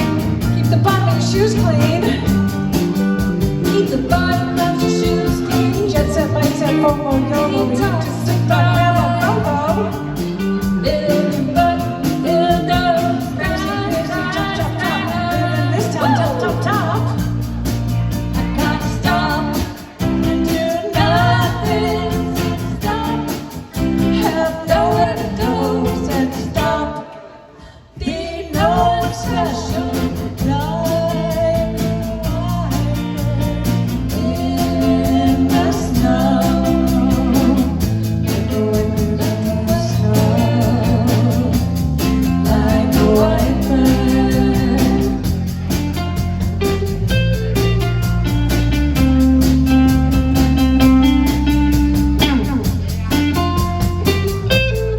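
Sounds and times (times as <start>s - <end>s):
live band with guitar and bass: 0.0s - 54.9s
lead singer singing: 3.6s - 17.5s, 18.4s - 45.6s.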